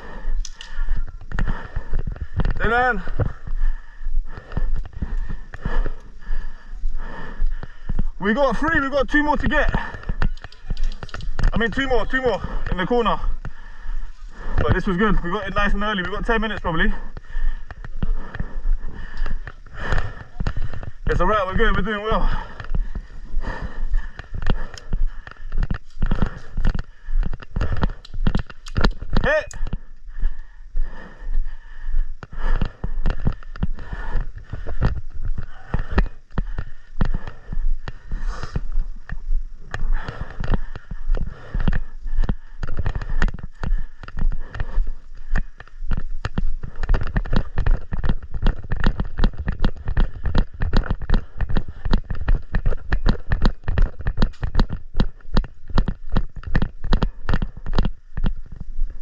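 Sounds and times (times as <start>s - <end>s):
airsoft guns popping: 9.7s - 11.9s, 24.5s - 29.8s.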